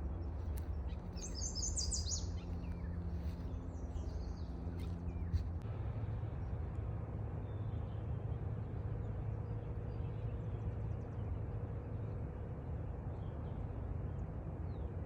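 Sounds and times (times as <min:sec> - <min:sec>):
steady low rumble: 0:00.0 - 0:07.4
faint hum: 0:00.0 - 0:15.0
faint bird chirps: 0:00.4 - 0:04.9.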